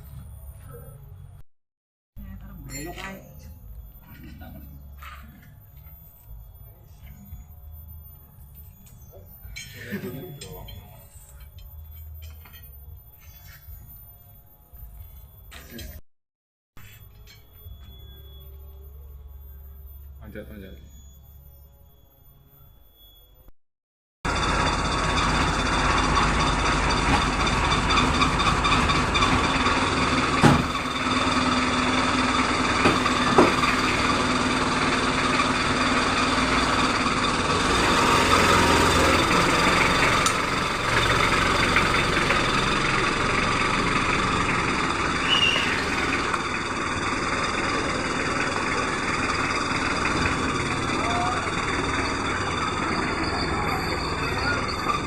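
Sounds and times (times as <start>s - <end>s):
vehicle engine running: 24.3s - 55.0s.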